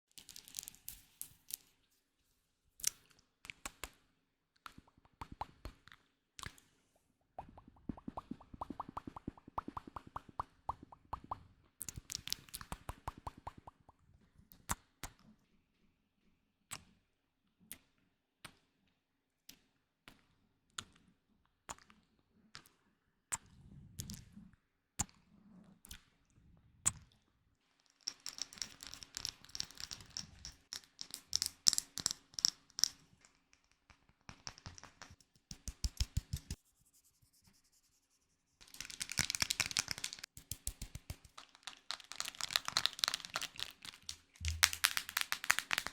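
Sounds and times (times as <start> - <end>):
crinkling and scratching: 40.9 - 45.9.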